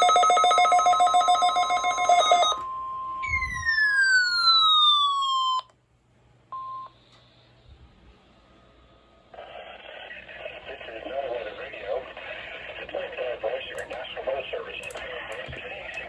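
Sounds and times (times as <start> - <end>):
steady alarm tone: 0.0 - 5.6
pulsing electronic alarm: 0.0 - 5.7.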